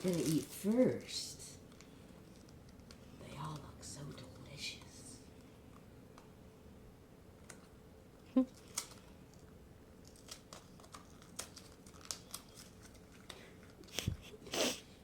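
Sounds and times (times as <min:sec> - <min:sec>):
plastic packaging crinkling and tearing: 0:00.0 - 0:04.4, 0:08.5 - 0:14.1.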